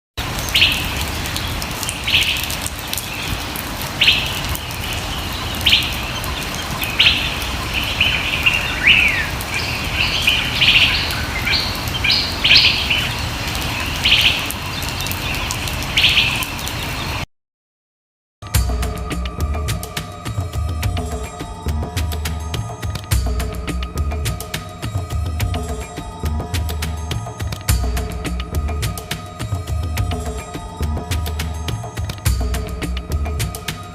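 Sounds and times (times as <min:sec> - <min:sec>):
birds calling: 0:00.2 - 0:17.2
steady background hiss: 0:00.2 - 0:17.2.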